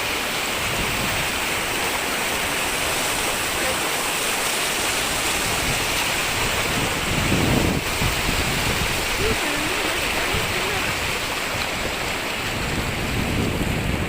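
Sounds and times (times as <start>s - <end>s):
river rushing: 0.0s - 14.0s.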